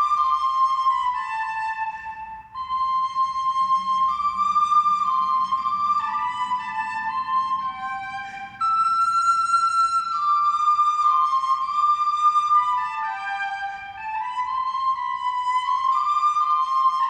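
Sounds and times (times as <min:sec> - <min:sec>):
slow melody of held notes: 0:00.0 - 0:17.0.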